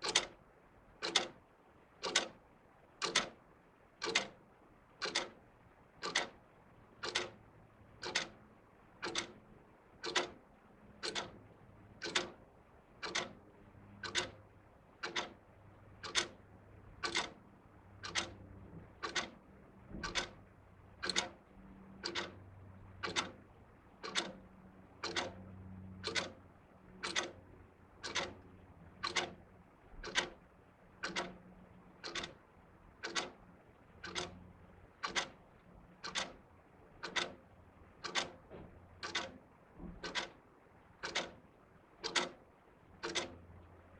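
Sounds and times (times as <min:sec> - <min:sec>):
wall clocks ticking: 0:00.0 - 0:00.4, 0:01.0 - 0:01.4, 0:02.0 - 0:02.4, 0:03.0 - 0:03.4, 0:04.0 - 0:04.4, 0:05.0 - 0:05.4, 0:06.0 - 0:06.4, 0:07.0 - 0:07.4, 0:08.0 - 0:08.4, 0:09.0 - 0:16.4, 0:17.0 - 0:17.4, 0:18.0 - 0:22.4, 0:23.0 - 0:43.7.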